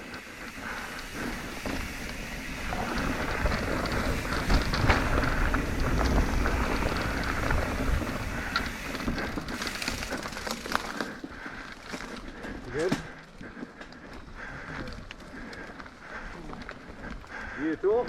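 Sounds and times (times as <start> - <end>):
wind rumble on microphone: 0.0 - 10.1
bike rattling: 0.0 - 18.0
tyres crunching on dirt: 0.0 - 18.0.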